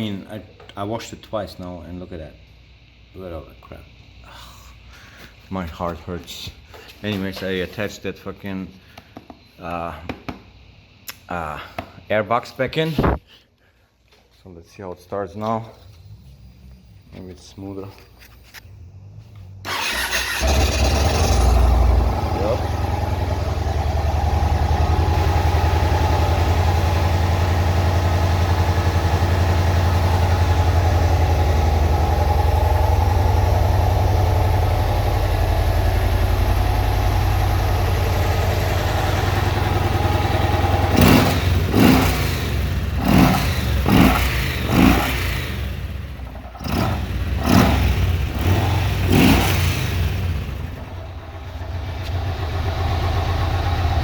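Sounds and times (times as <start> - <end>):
motorcycle engine idling: 19.7 - 54.0
motorcycle engine revving: 19.7 - 54.0.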